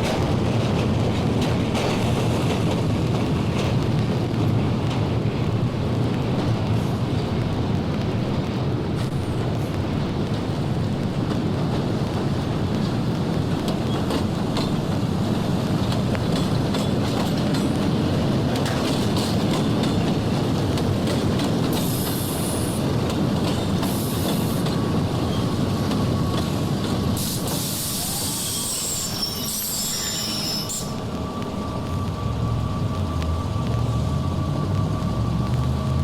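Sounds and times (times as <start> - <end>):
train rumbling on track: 0.0 - 36.0
high-pitched wheel squeal: 27.6 - 31.0.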